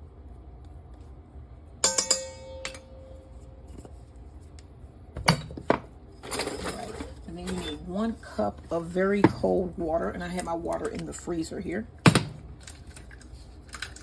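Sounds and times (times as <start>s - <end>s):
dish clinking: 1.8s - 3.5s.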